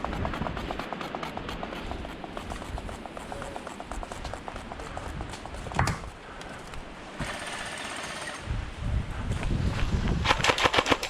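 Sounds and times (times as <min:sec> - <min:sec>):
rustling movement noise: 0:00.0 - 0:07.4
airsoft rifle full-auto burst: 0:07.2 - 0:08.4.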